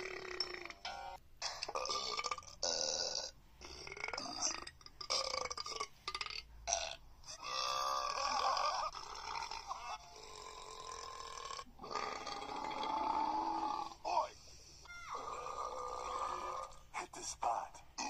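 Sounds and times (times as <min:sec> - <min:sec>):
person burping: 0:00.0 - 0:14.0, 0:15.3 - 0:16.8.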